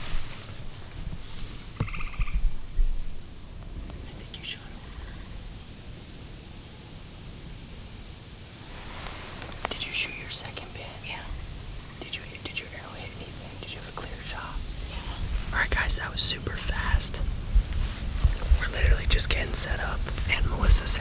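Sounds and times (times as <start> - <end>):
knocks and rustles: 0.0 - 3.0
insects chirping: 0.0 - 21.0.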